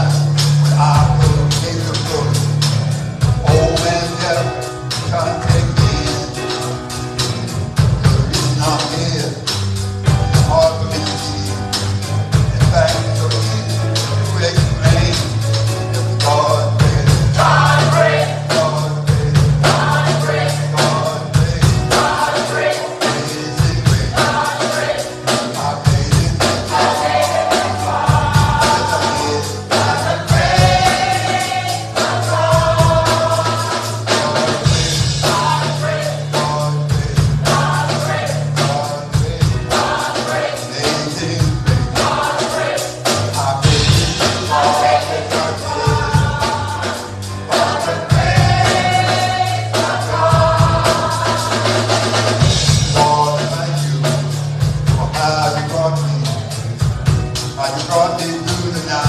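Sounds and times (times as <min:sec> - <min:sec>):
low bass notes: 0:00.0 - 0:59.0
steady drum beat: 0:00.0 - 0:59.0
choir singing: 0:17.0 - 0:52.7.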